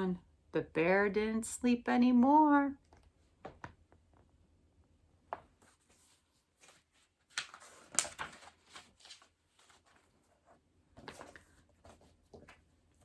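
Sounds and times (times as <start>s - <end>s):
paper rustling: 5.6s - 13.0s.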